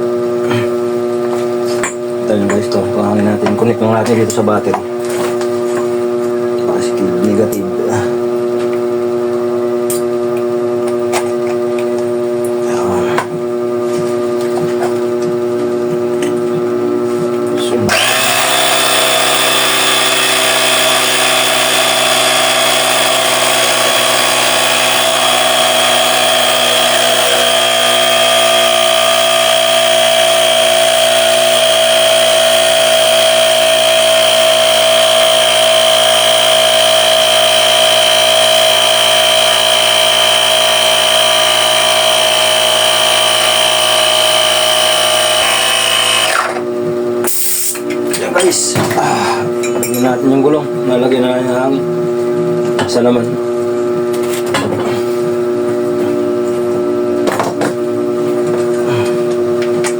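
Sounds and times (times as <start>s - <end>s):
air compressor running: 17.6s - 47.8s.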